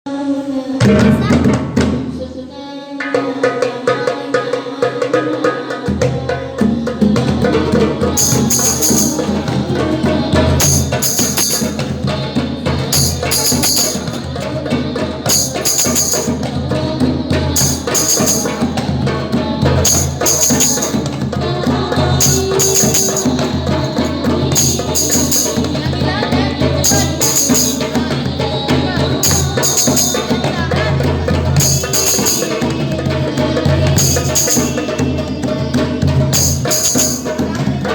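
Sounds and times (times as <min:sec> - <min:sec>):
voices: 0:00.2 - 0:37.9
music with drums: 0:00.8 - 0:02.3, 0:03.0 - 0:37.9
tambourine jingles: 0:08.1 - 0:09.7, 0:10.6 - 0:12.1, 0:12.9 - 0:14.5, 0:15.3 - 0:16.6, 0:17.6 - 0:18.8, 0:19.8 - 0:21.3, 0:22.2 - 0:25.9, 0:26.8 - 0:28.0, 0:29.2 - 0:30.4, 0:31.6 - 0:32.9, 0:33.9 - 0:35.3, 0:36.3 - 0:37.7.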